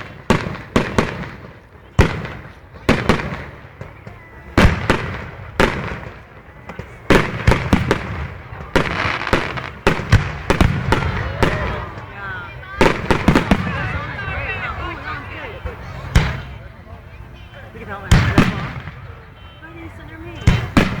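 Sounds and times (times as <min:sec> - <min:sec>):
firework shells booming: 0:00.0 - 0:12.2, 0:12.8 - 0:14.3, 0:18.1 - 0:19.3, 0:20.5 - 0:21.0
fireworks crackling: 0:00.0 - 0:21.0.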